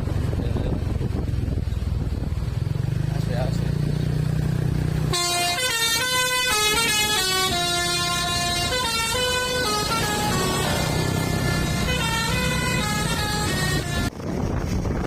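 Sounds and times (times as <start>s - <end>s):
diesel bus engine: 0.0s - 15.0s
musical air horn melody: 5.1s - 14.1s.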